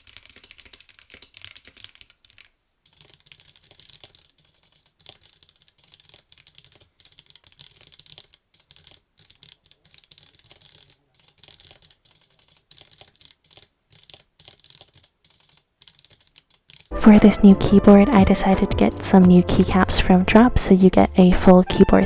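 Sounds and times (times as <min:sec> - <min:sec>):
mechanical keyboard key clacks: 0:00.0 - 0:16.9.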